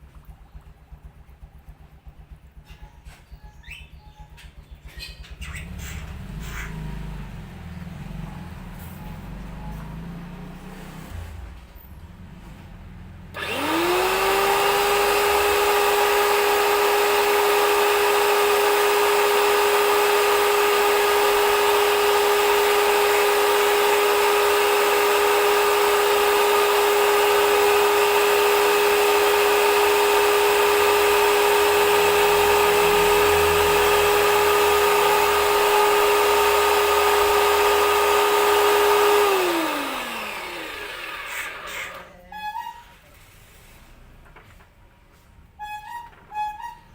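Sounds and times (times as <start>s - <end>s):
pressure washer motor whining: 13.3s - 42.2s.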